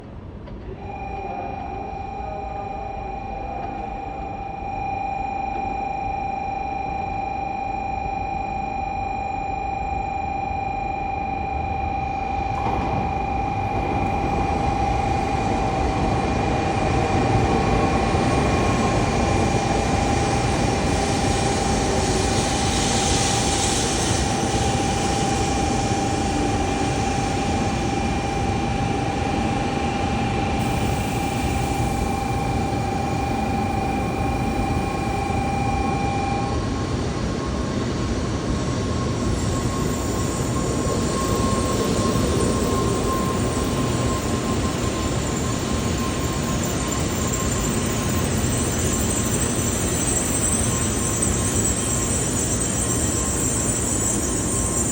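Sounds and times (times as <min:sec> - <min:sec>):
steady high-pitched tone: 0:00.8 - 0:54.9
train wheels and air rushing: 0:12.5 - 0:54.9.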